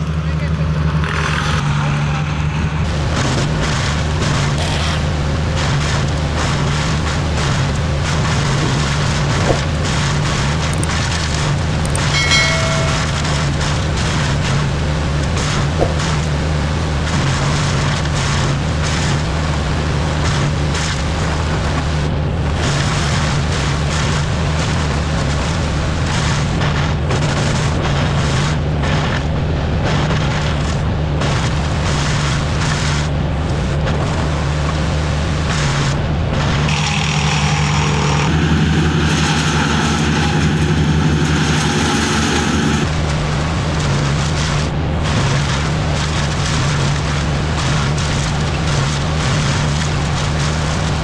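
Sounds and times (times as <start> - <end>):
large engine running steadily: 0.0 - 51.0
short tone: 12.0 - 14.0.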